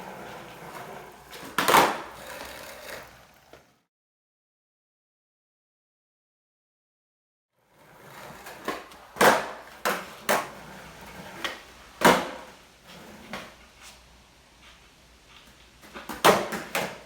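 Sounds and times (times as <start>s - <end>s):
skateboard clacks and slaps: 0.0s - 3.7s, 7.8s - 13.6s, 15.8s - 17.0s
skateboard wheels rolling: 0.0s - 3.9s, 7.6s - 17.0s.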